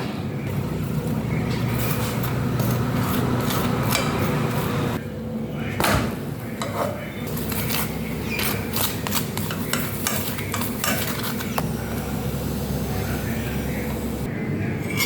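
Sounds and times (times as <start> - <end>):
steady low hum: 0.0 - 15.0
metal utensils clinking on dishes: 6.6 - 11.6, 14.8 - 15.0.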